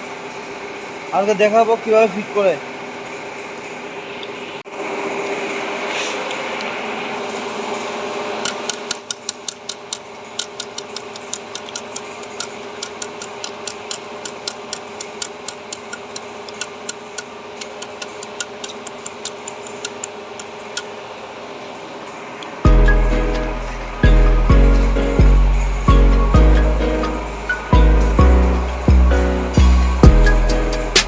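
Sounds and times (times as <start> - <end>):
steady background hum: 0.0 - 31.0
sharp evenly spaced clicks: 8.4 - 21.0, 22.4 - 31.0.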